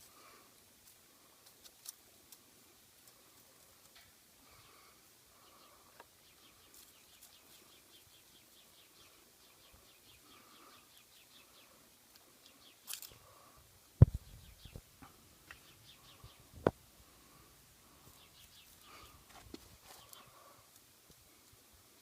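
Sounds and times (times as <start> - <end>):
faint rapid chirping: 2.4 - 14.9
sharp thumps: 14.0 - 14.8.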